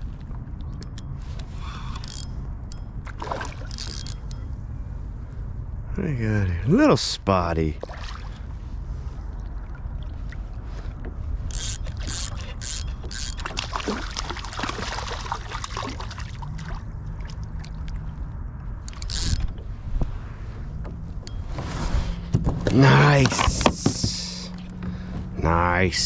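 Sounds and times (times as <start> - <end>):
water splashing: 3.1 - 4.1, 7.8 - 8.5, 11.9 - 18.2.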